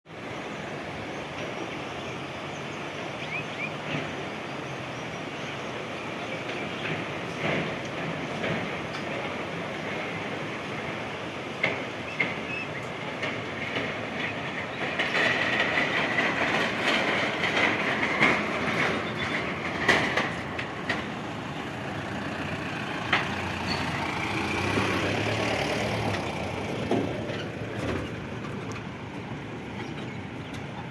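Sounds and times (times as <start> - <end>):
vehicle engine rumble: 0.1 - 30.9
vehicle body rattling: 6.5 - 30.9.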